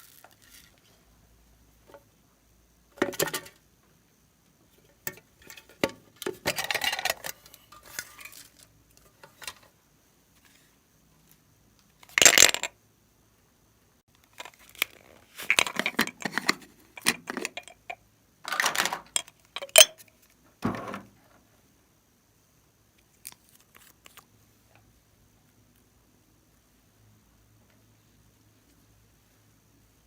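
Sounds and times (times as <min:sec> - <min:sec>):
plastic crinkling and clattering: 0:05.1 - 0:09.7, 0:14.3 - 0:20.0.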